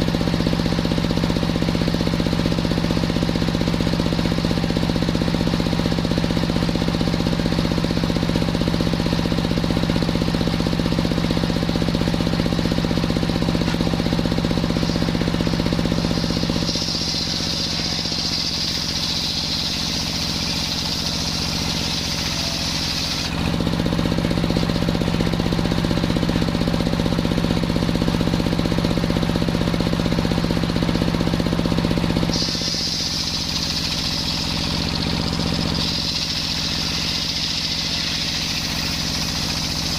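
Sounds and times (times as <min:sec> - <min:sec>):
sawmill engine knocking: 0:00.0 - 0:39.9
saw blade cutting wood hiss: 0:14.4 - 0:23.4, 0:32.3 - 0:39.9.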